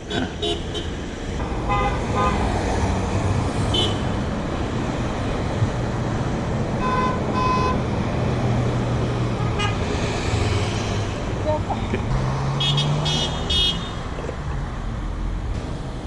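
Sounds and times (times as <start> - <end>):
passing car engines: 0.0 - 16.0
car horn toots: 6.8 - 7.8, 12.6 - 14.0.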